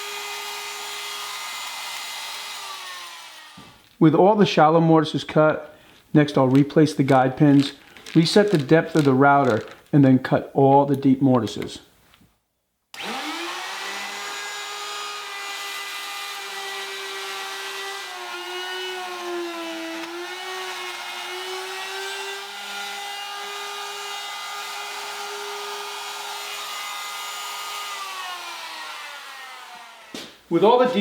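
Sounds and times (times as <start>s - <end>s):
router motor whining: 0.0s - 3.8s, 13.0s - 30.2s.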